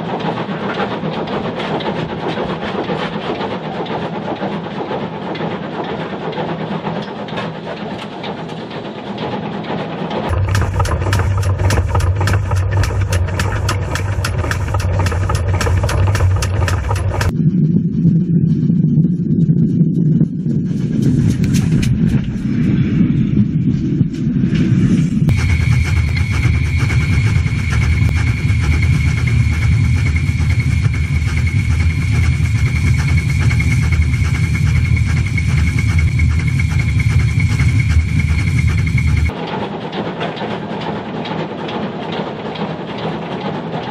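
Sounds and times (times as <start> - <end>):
steam locomotive drone: 0.0 - 18.6, 20.3 - 43.9
sharp rhythmic clicks: 10.2 - 17.3, 25.3 - 43.5.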